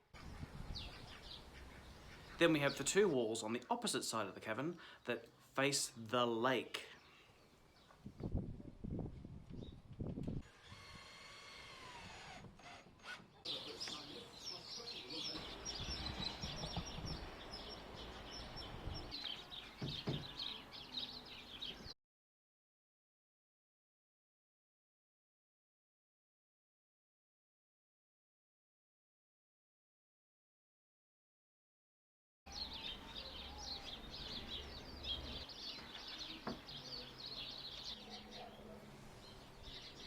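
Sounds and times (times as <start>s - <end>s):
small birds chirping: 0.1s - 10.4s, 13.0s - 22.0s, 32.5s - 40.0s
dull knocks: 19.8s - 20.4s.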